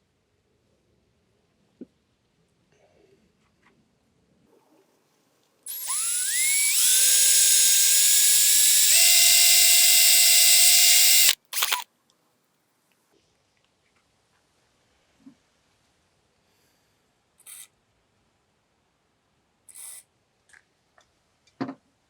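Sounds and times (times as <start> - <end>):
electric drill whining: 5.7 - 11.8.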